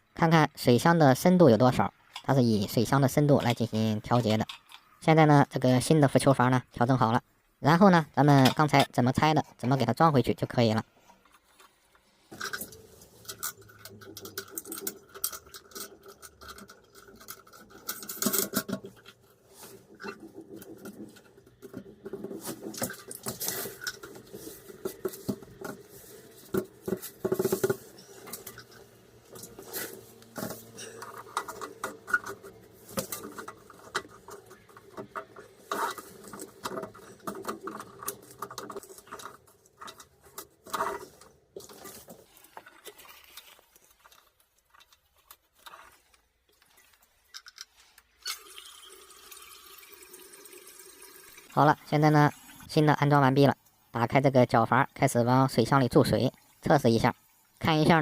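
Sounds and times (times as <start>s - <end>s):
hands fitting plastic valve: 11.2s - 45.9s.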